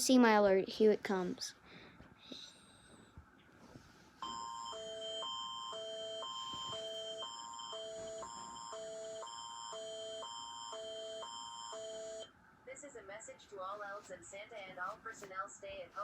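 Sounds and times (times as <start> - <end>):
steady high tone: 4.2 - 12.3.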